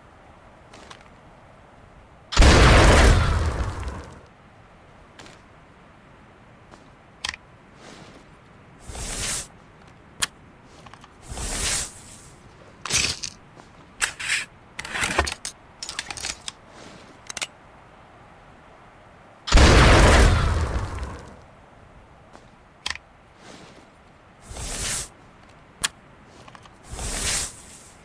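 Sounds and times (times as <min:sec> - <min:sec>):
scraping rustling bursts: 0:07.8 - 0:09.6, 0:10.6 - 0:17.4, 0:23.3 - 0:25.4, 0:26.2 - 0:28.0
gun clicks: 0:22.8 - 0:23.0.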